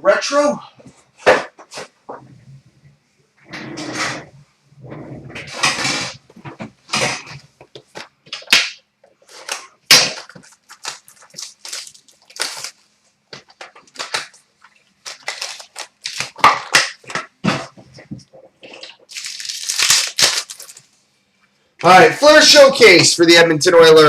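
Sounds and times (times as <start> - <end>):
packaging being torn open: 9.3 - 12.8, 15.0 - 17.0, 18.8 - 20.8.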